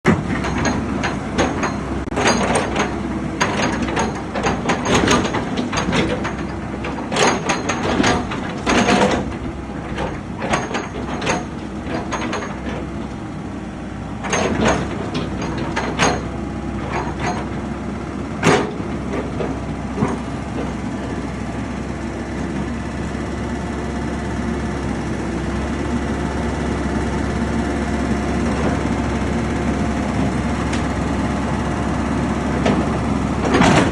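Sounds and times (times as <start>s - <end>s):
excavator diesel engine running: 0.0s - 33.9s
sharp metallic clanks and knocks: 0.1s - 13.2s, 14.2s - 17.7s, 18.4s - 21.4s, 32.5s - 33.9s.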